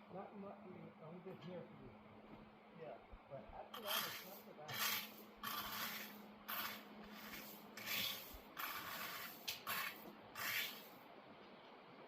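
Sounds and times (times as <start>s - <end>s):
tool scraping through stone ballast: 3.8s - 10.9s.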